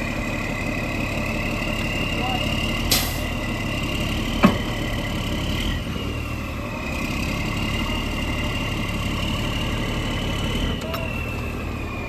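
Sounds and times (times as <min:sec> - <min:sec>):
truck engine idling: 0:00.0 - 0:12.0.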